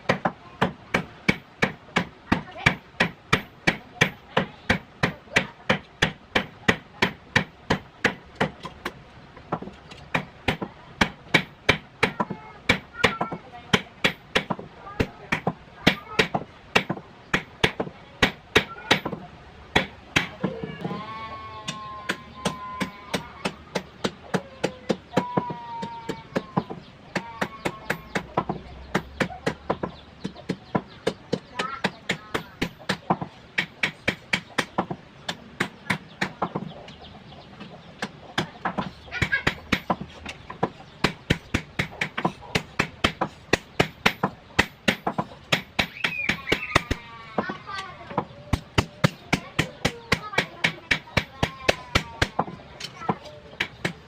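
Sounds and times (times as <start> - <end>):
long animal call: 20.5 - 23.4.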